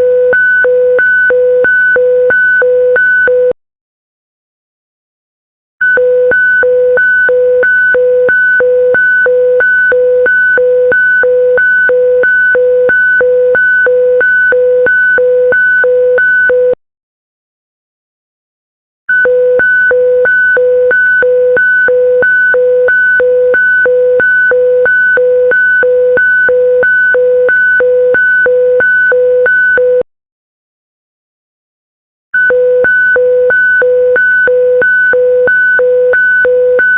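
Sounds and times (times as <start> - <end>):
alternating two-tone alarm beep: 6.0 - 16.8, 19.2 - 30.0, 32.4 - 36.9.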